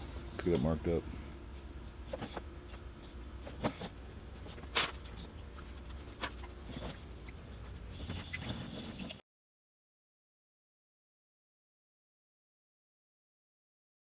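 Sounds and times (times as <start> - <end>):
low steady hum: 0.0 - 9.2
cable boxes scratching and tapping: 2.0 - 9.2
faint squeak: 6.4 - 9.2.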